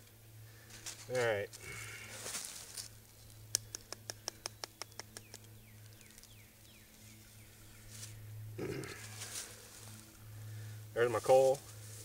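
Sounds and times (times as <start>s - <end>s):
sharp animal clicks: 3.5s - 6.4s.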